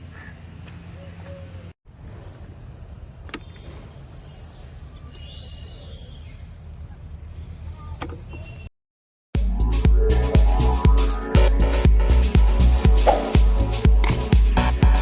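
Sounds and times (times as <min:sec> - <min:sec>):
steady low rumble: 0:09.6 - 0:15.0.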